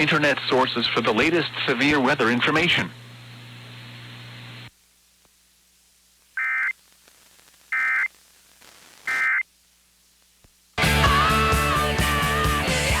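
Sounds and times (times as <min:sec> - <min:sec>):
digital data screech bursts: 0:06.4 - 0:06.7, 0:07.8 - 0:08.1, 0:09.1 - 0:09.4.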